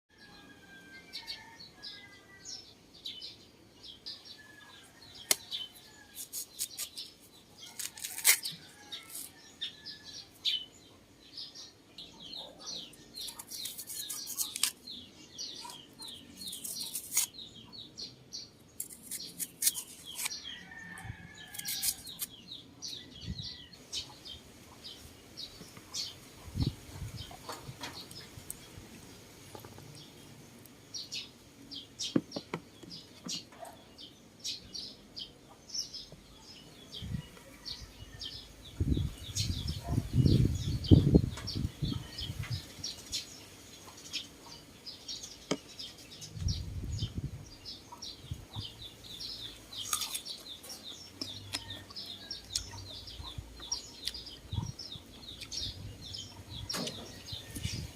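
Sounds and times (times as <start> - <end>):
small birds chirping: 1.0 - 57.9
crunching clicks of eating: 49.7 - 52.8.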